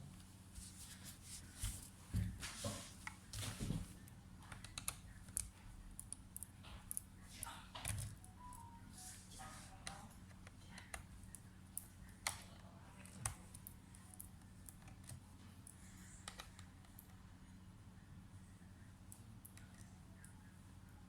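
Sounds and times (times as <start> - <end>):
low electrical hum: 0.0 - 21.0
faint clicks and taps from handling: 1.6 - 8.7, 9.4 - 17.2.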